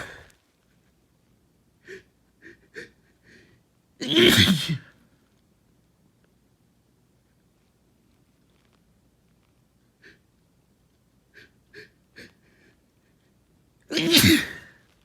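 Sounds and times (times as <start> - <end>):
person sneezing: 0.0 - 0.3, 4.0 - 4.9, 13.9 - 14.8.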